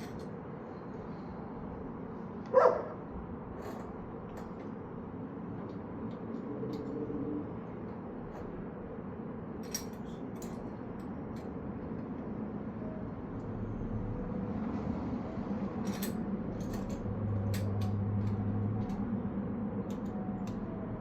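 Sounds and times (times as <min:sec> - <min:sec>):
low background hum: 0:00.0 - 0:21.0
dog barking: 0:02.5 - 0:03.0.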